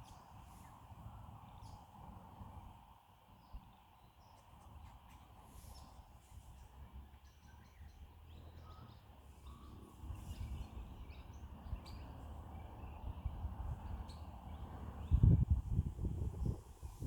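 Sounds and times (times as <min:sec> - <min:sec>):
wind rumble on microphone: 0:00.0 - 0:17.0
birds chirping: 0:03.4 - 0:15.6.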